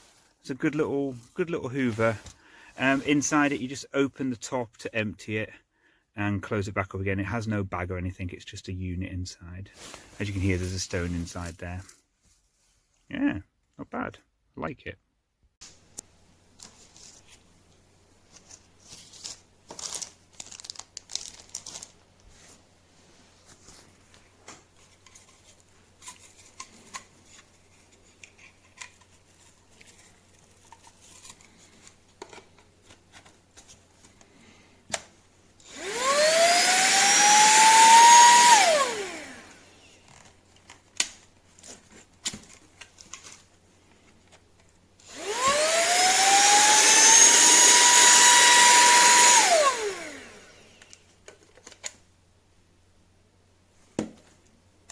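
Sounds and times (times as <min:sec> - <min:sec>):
handheld vacuum cleaner motor whine: 0:35.6 - 0:40.2, 0:45.0 - 0:51.0.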